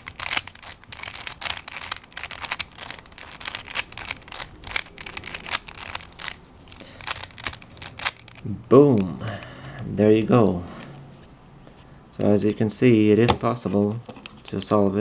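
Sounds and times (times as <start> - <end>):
puzzle cube clicking: 0.0 - 9.5.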